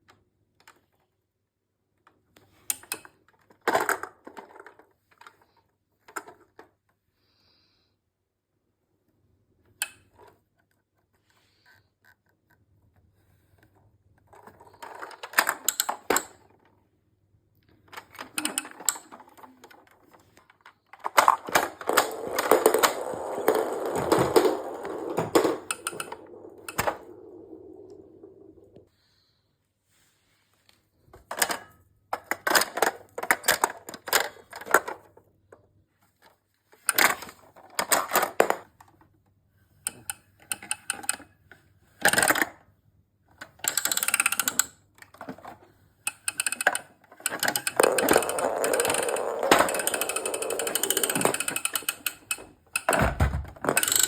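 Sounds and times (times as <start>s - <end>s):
plastic toy pieces clicking: 21.0s - 28.2s, 43.6s - 45.4s, 46.1s - 53.0s, 53.6s - 54.0s.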